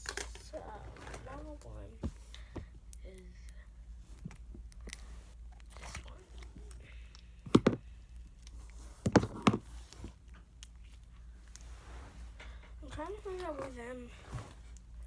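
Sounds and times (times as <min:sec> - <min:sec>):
plastic containers clacking: 0:00.0 - 0:02.2, 0:07.5 - 0:07.8, 0:09.0 - 0:09.7.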